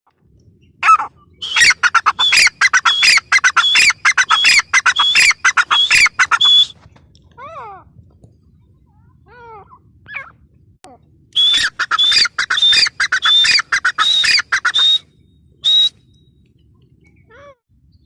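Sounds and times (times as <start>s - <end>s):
francolin calling harshly: 0.8s - 6.7s, 11.4s - 15.0s.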